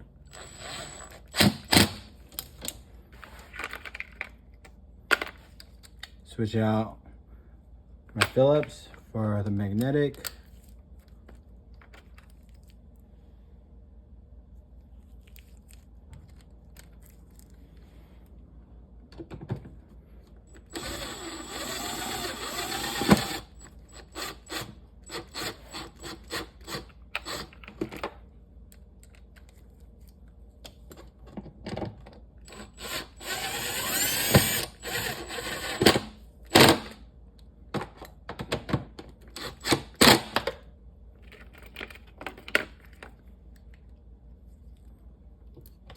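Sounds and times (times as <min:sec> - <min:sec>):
impact driver running: 0:20.6 - 0:26.4, 0:32.5 - 0:37.0.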